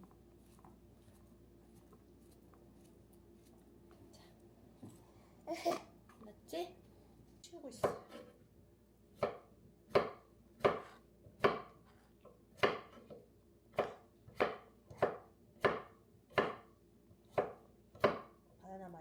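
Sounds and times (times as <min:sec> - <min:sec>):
knife chopping on cutting board: 0:07.8 - 0:08.4, 0:09.1 - 0:16.7, 0:17.3 - 0:18.4.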